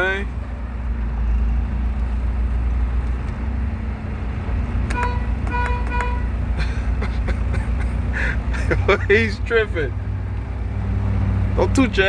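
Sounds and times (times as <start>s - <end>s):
truck engine rumbling: 0.0s - 12.0s
truck horn toots: 4.9s - 6.5s.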